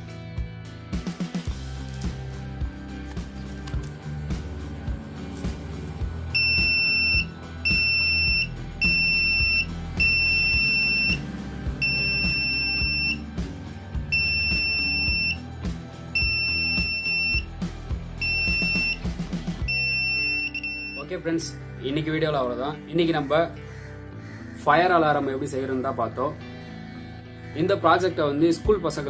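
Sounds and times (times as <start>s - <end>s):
background music: 0.0s - 29.0s
electronic alarm buzzer beeping: 6.3s - 13.2s, 14.0s - 15.5s, 16.1s - 17.6s, 18.2s - 21.1s.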